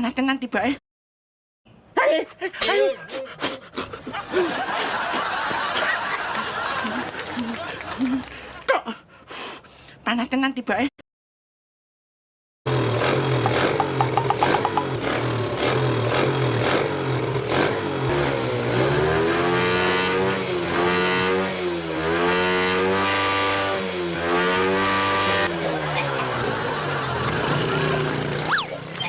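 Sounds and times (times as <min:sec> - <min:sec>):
motorcycle engine idling and revving: 0:12.7 - 0:29.0.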